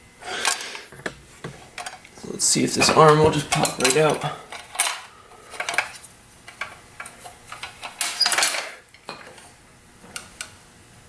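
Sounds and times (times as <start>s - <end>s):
hand tools clinking on metal: 2.8s - 5.9s.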